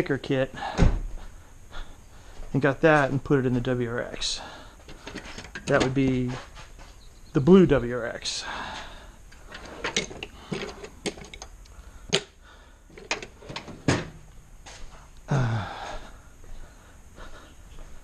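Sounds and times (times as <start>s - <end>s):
plastic parts clicking and knocking: 4.8s - 6.1s, 9.3s - 14.1s.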